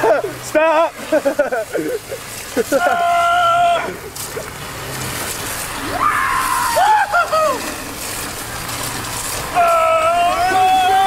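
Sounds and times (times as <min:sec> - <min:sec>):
sliding through slushy snow: 0:00.0 - 0:11.0
person yelling: 0:02.7 - 0:04.0, 0:06.0 - 0:07.7, 0:09.5 - 0:11.0.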